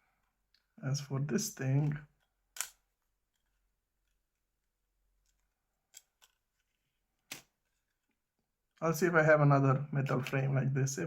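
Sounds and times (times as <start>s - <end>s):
faint clicks of small parts: 5.2s - 8.8s.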